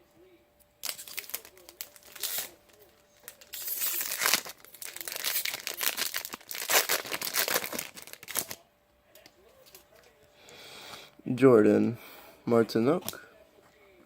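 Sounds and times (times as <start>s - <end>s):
wrapper crinkling: 0.8s - 8.6s.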